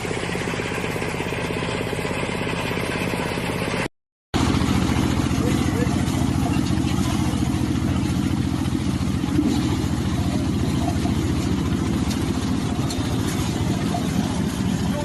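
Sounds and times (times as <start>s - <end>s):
harvester engine running: 0.0s - 15.0s.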